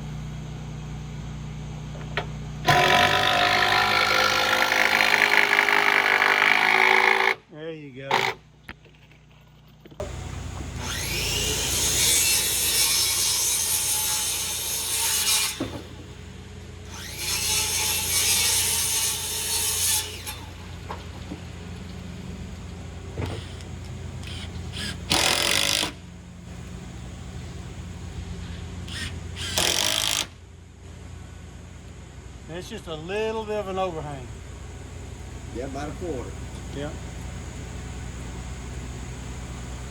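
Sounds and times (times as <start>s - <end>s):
steady low hum: 0.0s - 39.9s
power tool working into wood: 2.6s - 7.4s, 10.0s - 16.1s, 23.2s - 26.0s, 28.9s - 30.3s.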